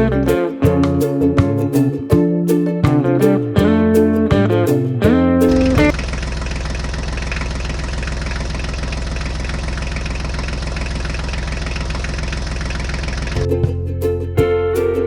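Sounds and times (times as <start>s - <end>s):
engine idling: 5.5s - 14.6s.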